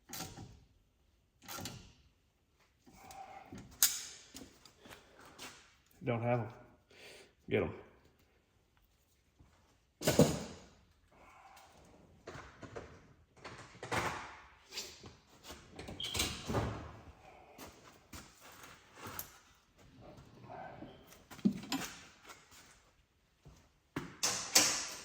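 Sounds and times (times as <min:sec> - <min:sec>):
objects knocking and clunking: 0:10.0 - 0:10.8, 0:12.1 - 0:14.5, 0:21.0 - 0:22.6.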